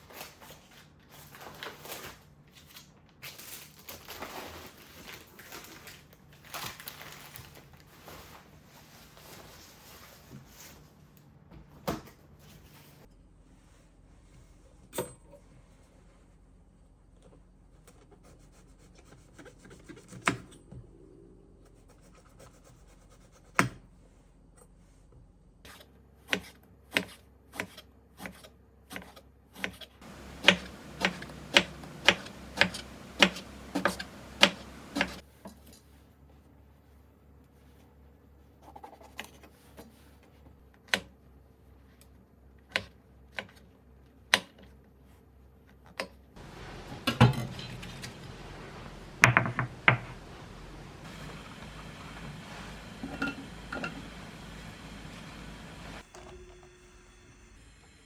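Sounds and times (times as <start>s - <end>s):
rubbing and scraping: 30.0s - 35.3s
sharp knocks in kitchen: 49.2s - 50.2s.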